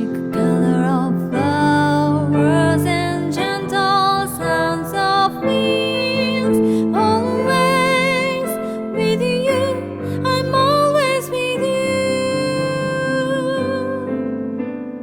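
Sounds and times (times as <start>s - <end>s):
woman singing ballad: 0.0s - 14.4s
soft piano: 0.0s - 15.0s.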